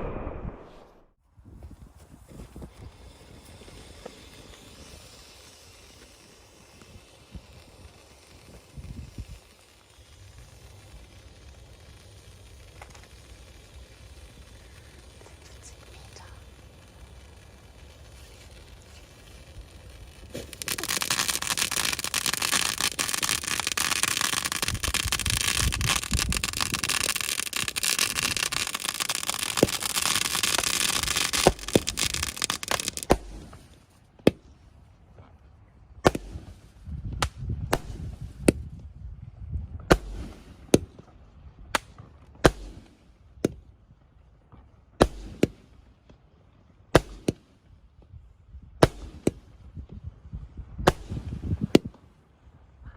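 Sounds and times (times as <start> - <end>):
firework sharp bangs: 0.0 - 1.2, 20.2 - 33.6, 36.0 - 36.5, 47.0 - 47.4
firework hissing and crackling: 2.2 - 33.9, 36.0 - 38.8, 39.9 - 41.1, 41.8 - 43.2, 48.8 - 49.8.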